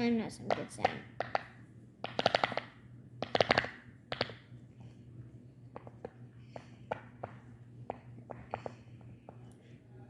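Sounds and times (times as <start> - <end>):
fidget toy bubble pops: 0.5 - 4.4.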